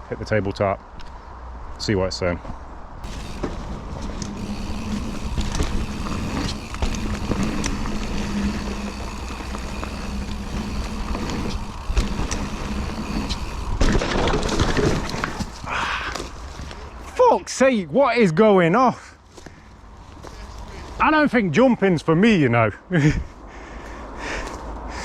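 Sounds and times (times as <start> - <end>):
rumble of wind and tyres: 0.0 - 17.2, 19.1 - 25.0
bike knocks and rattles: 3.0 - 16.8
loud bike clatter: 3.0 - 16.8.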